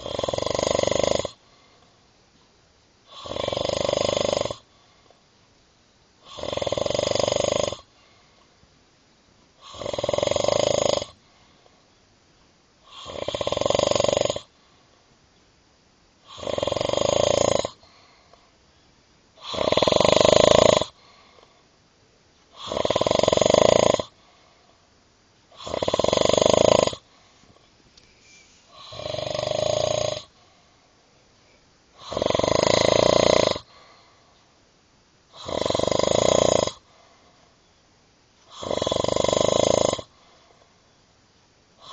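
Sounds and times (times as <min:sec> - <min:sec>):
loud snoring: 0:00.0 - 0:01.5, 0:03.1 - 0:04.7, 0:06.2 - 0:07.9, 0:09.6 - 0:11.2, 0:12.8 - 0:14.6, 0:16.2 - 0:17.8, 0:19.4 - 0:21.0, 0:22.5 - 0:24.2, 0:25.5 - 0:27.1, 0:28.3 - 0:30.4, 0:32.0 - 0:33.8, 0:35.3 - 0:36.9, 0:38.5 - 0:40.2
quiet breaths: 0:00.0 - 0:41.9.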